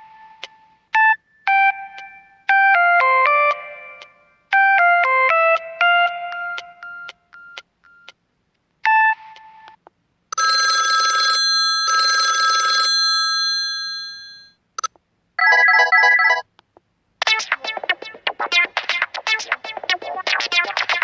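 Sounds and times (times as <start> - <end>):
phone ringtone melody: 1.0 - 8.1, 10.4 - 14.6, 15.4 - 16.4
telephone bell ringing bursts: 10.4 - 14.6, 15.4 - 16.4.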